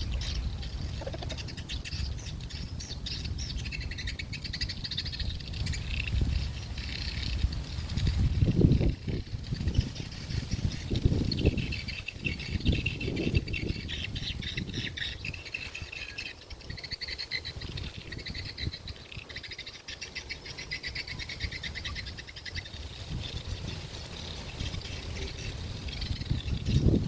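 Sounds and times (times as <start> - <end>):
small animals chirping: 0.0 - 27.0.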